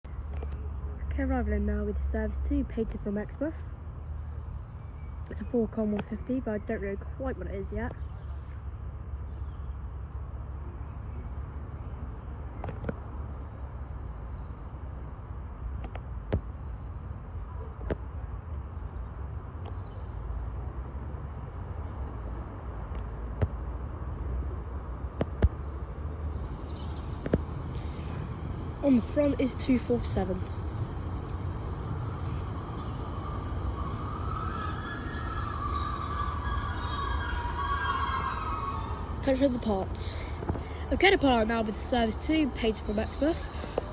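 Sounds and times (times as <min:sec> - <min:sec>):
diesel train rumbling: 0:19.4 - 0:43.9
high-pitched brake squeal: 0:32.6 - 0:39.7.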